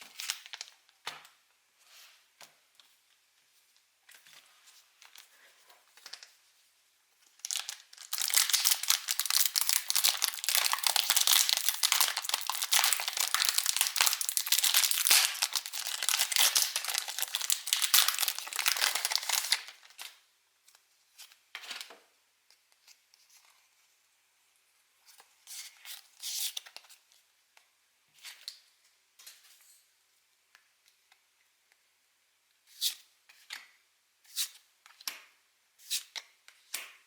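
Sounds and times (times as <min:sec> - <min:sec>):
foil wrapper tearing and crinkling: 0:07.4 - 0:20.0.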